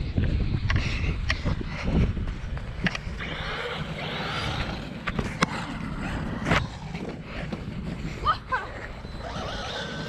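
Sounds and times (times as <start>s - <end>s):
toy car tyres and motor rushing: 2.5s - 10.0s.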